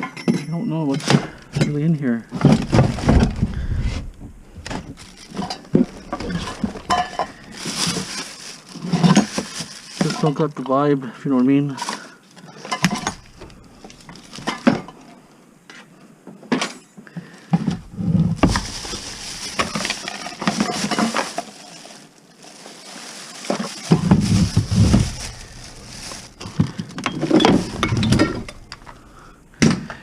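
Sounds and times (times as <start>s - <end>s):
household objects clinking and rattling: 0.0s - 10.8s, 11.7s - 15.2s, 17.5s - 30.0s
low rumbling and shuffling: 0.8s - 10.6s, 12.9s - 15.0s, 17.6s - 21.2s, 23.8s - 30.0s.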